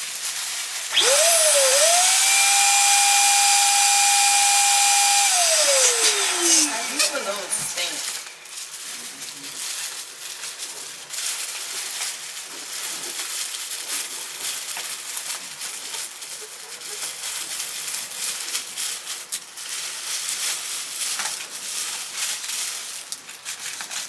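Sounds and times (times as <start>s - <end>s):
crinkling and rustling: 8.1s - 24.0s.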